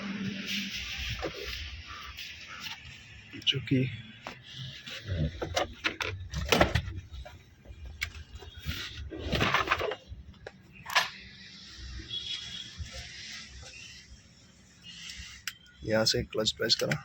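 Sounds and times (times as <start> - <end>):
sharp handling clicks and knocks: 5.3 - 11.2, 16.7 - 17.0.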